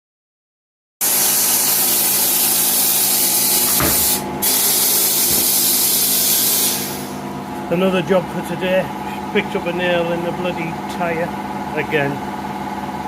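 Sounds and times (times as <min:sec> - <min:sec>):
pressurised gas hissing: 0:01.1 - 0:07.3.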